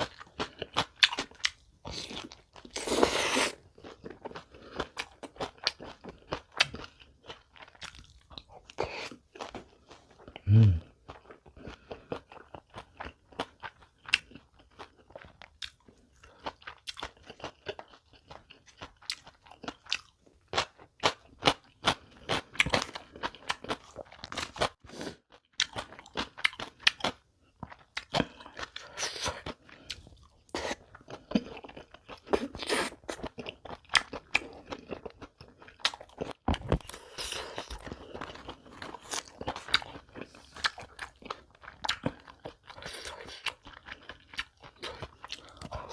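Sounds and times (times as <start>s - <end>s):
chewing crunchy food: 0.0s - 45.9s.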